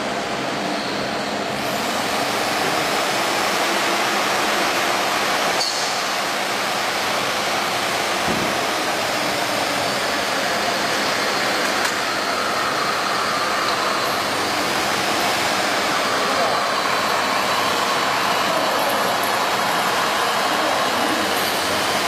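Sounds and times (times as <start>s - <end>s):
workshop machinery rushing: 1.6s - 22.0s.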